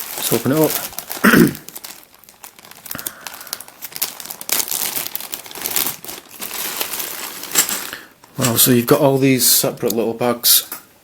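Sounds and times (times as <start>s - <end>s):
packaging crinkling: 0.0s - 8.7s.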